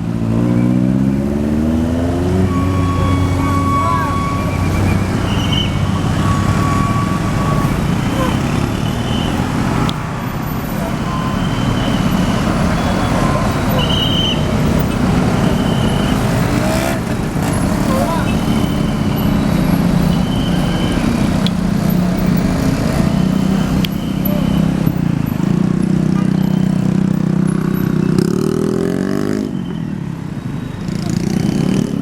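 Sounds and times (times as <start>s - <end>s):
road noise: 0.0s - 32.0s
bus engine running: 1.7s - 28.0s
high bus horn tones: 2.2s - 10.0s, 10.7s - 21.4s.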